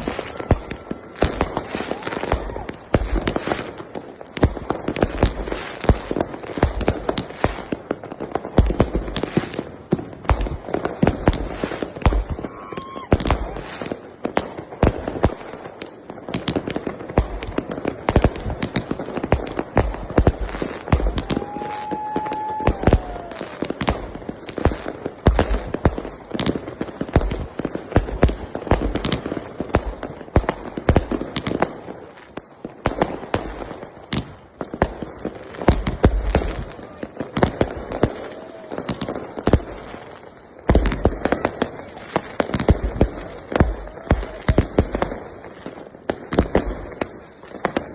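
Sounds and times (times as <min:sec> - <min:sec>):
firework whistle: 0:00.0 - 0:03.8, 0:11.6 - 0:13.9, 0:20.9 - 0:24.1, 0:36.4 - 0:40.1
fireworks bangs and crackles: 0:00.0 - 0:47.9.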